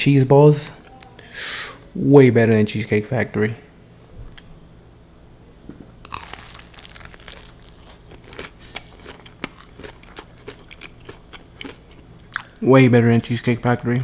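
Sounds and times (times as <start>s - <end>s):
crunchy fried food chewing: 6.0s - 13.4s.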